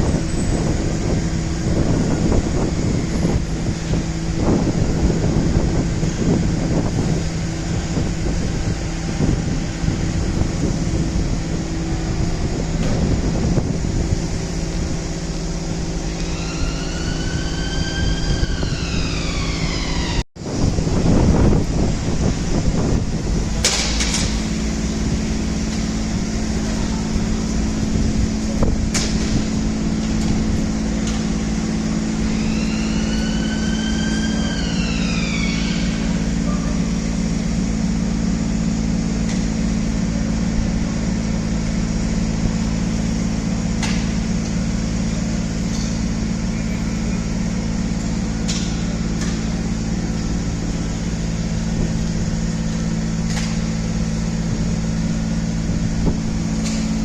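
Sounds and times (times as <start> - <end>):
rising and falling tone: 15.9 - 20.2.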